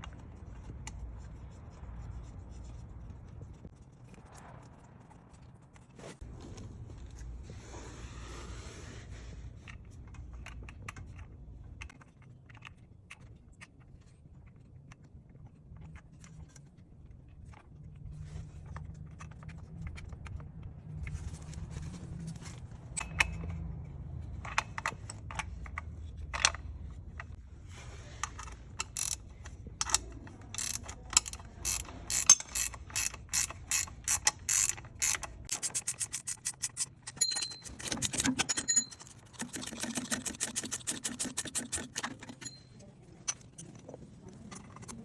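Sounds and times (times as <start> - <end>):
ratchet wrench clicking: 28.4 - 42.6.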